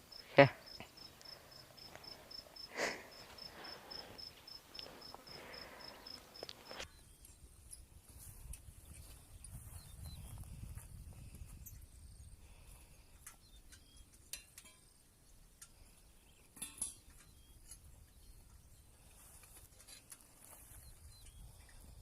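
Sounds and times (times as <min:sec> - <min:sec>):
faint clicks and clinks: 0:13.2 - 0:14.9.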